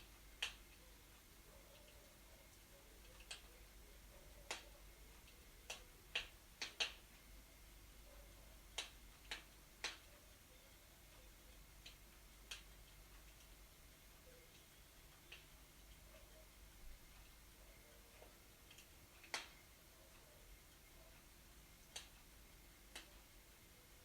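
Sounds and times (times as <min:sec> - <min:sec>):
faint steady hiss: 0:00.0 - 0:24.0
firewood crackling and popping: 0:05.2 - 0:07.1, 0:08.7 - 0:10.1, 0:18.2 - 0:19.7.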